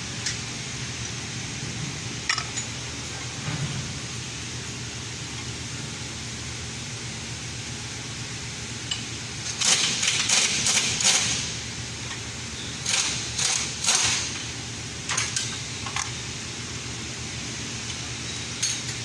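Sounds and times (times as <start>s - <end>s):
steady low hum: 0.0s - 19.0s
metal tools clattering: 18.6s - 19.0s.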